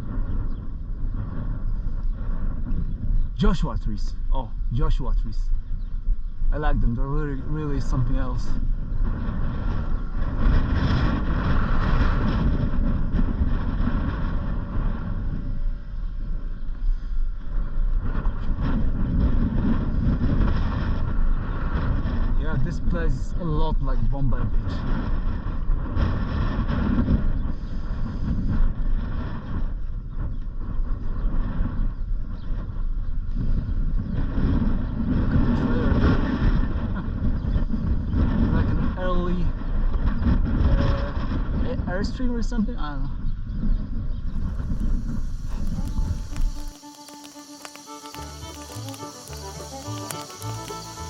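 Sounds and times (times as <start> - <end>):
wind buffeting microphone: 0.0 - 51.0
road noise hiss: 44.3 - 51.0
vehicle driving slowly: 44.4 - 51.0.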